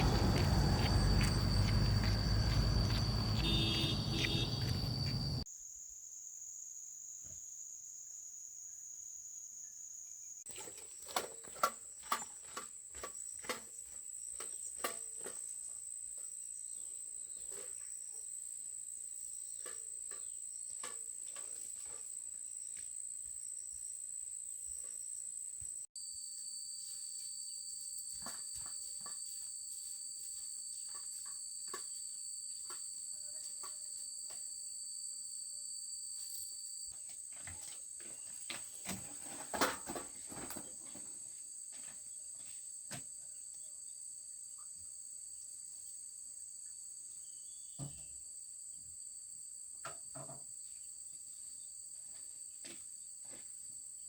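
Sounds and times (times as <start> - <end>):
loud rumbling noise: 0.0 - 5.4
insect chorus: 0.0 - 10.4, 40.3 - 54.0.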